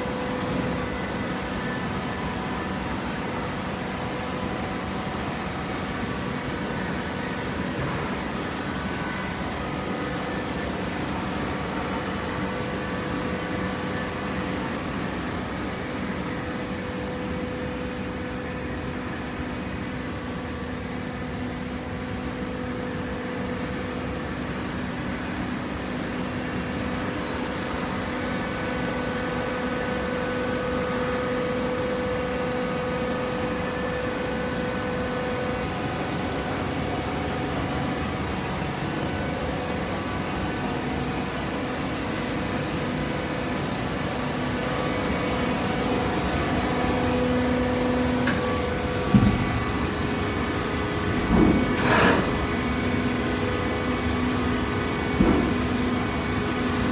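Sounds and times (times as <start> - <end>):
baler machine humming: 43.5 - 56.9.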